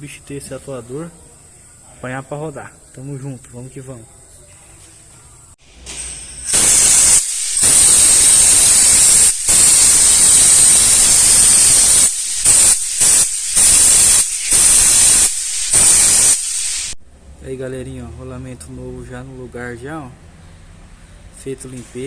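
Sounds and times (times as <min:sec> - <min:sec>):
pressurized air jet hissing: 0:05.8 - 0:17.0.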